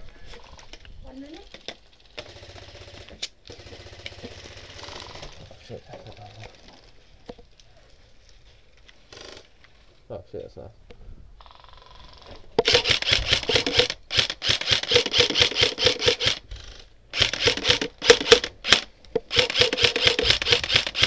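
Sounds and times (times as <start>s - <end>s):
airsoft gun full-auto bursts: 2.2s - 5.0s, 12.6s - 16.4s, 17.1s - 21.0s.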